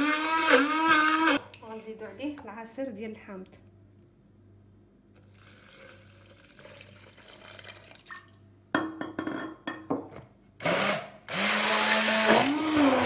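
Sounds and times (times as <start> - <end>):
blender motor running: 0.0 - 1.4, 10.6 - 13.0.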